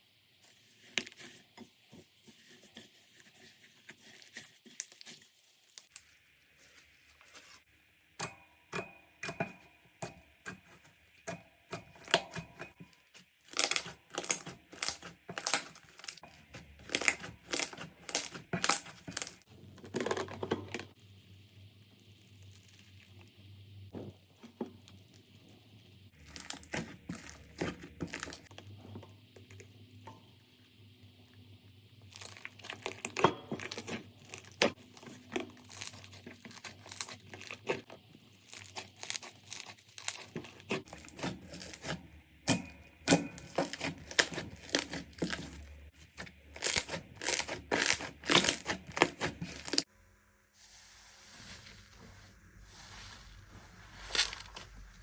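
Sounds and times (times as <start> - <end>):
slime crackling and popping: 13.4 - 19.4, 26.2 - 28.5, 32.1 - 41.9, 43.0 - 45.6, 46.5 - 49.8.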